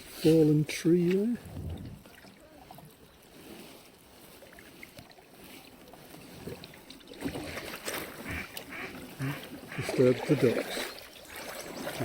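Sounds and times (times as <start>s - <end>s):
paddle strokes in water: 0.0s - 12.0s
soft splashes and drips: 0.1s - 12.0s.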